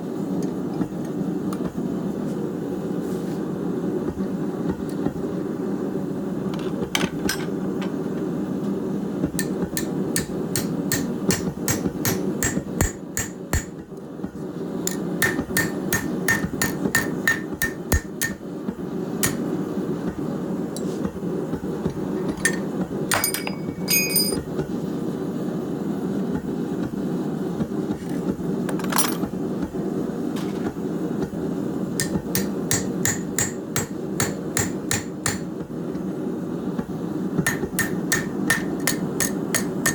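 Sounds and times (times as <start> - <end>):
hammer striking hot steel on anvil: 9.3 - 13.9, 14.8 - 18.5, 19.2 - 19.5, 22.2 - 24.5, 32.0 - 35.5, 37.4 - 39.9
metal ringing: 22.4 - 24.5.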